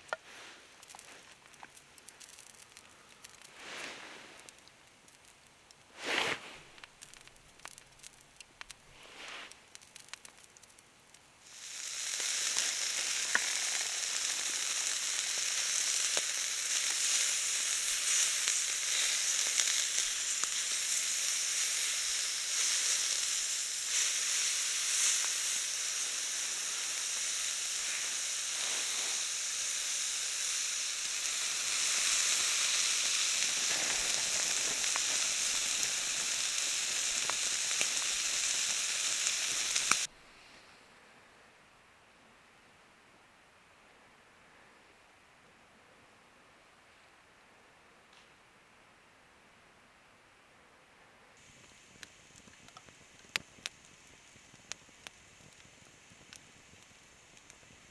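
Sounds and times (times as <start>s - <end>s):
food sizzling in a pan: 11.4s - 40.1s, 51.4s - 57.9s.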